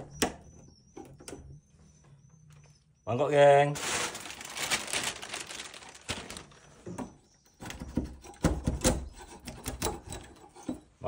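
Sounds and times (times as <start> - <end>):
scraping and rustling: 3.8 - 7.2.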